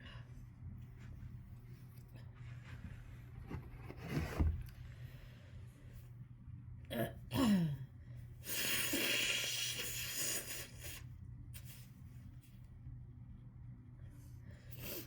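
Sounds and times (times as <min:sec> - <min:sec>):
person blowing nose: 0:08.5 - 0:11.0.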